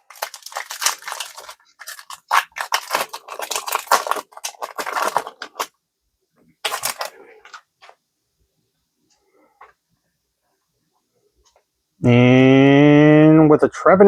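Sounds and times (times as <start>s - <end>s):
foil wrapper crinkling and tearing: 0.0s - 5.8s, 6.6s - 7.7s
rustling: 0.0s - 8.0s.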